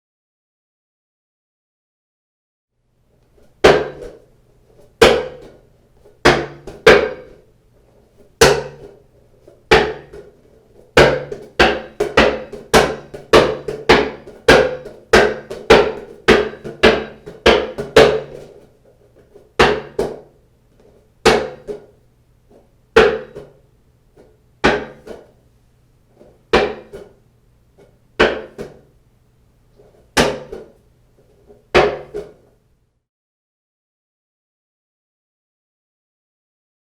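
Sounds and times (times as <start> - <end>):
ball bouncing on hard floor: 3.6 - 4.2, 4.9 - 7.4, 8.3 - 18.6, 19.2 - 20.3, 21.2 - 22.0, 23.0 - 23.6, 24.2 - 25.3, 26.2 - 27.2, 27.8 - 28.9, 30.2 - 30.8, 31.7 - 32.4.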